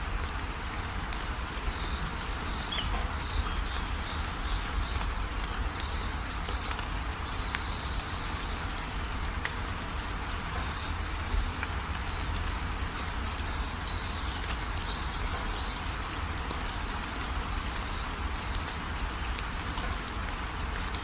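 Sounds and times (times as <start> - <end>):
steady rain falling: 0.0 - 21.0
water drips: 0.0 - 21.0
birds chirping: 0.5 - 11.6.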